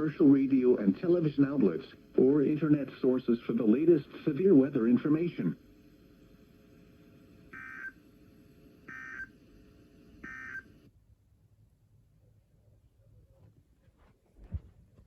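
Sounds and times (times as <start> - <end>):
faint radio hiss: 0.0 - 10.9
raspy digital data bursts: 7.5 - 8.0, 8.9 - 9.4, 10.2 - 10.7.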